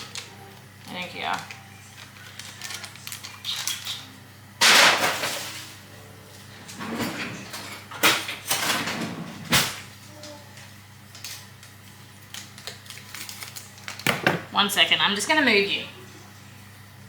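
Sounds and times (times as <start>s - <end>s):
kitchen clattering knock: 14.0s - 14.5s.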